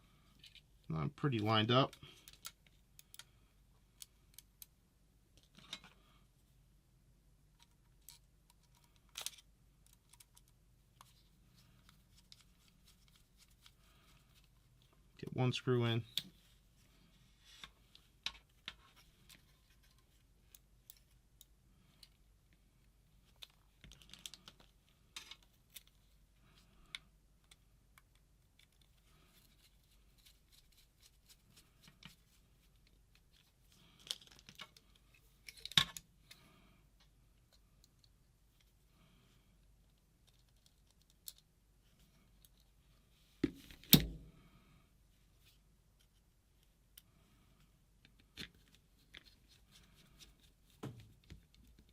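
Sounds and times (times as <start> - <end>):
small parts clicking and tapping: 1.9 - 6.0, 7.6 - 11.2, 23.2 - 26.0, 32.8 - 36.4, 39.6 - 41.5.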